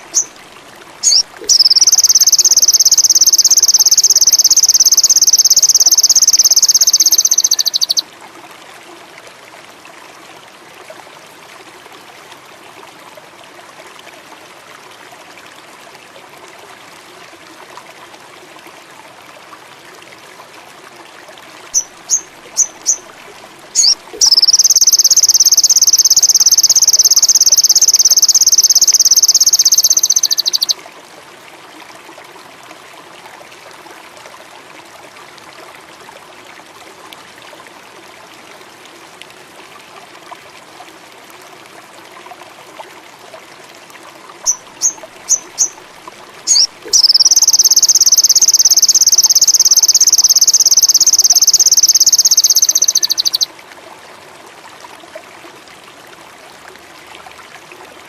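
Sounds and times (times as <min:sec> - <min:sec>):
faint steady hiss: 0:00.0 - 0:58.0
songbird high-pitched trill: 0:00.1 - 0:00.3, 0:01.0 - 0:08.0, 0:23.8 - 0:30.8, 0:44.5 - 0:45.8, 0:46.5 - 0:53.5
bird short chirps: 0:01.0 - 0:08.0, 0:23.8 - 0:30.8, 0:46.5 - 0:53.5.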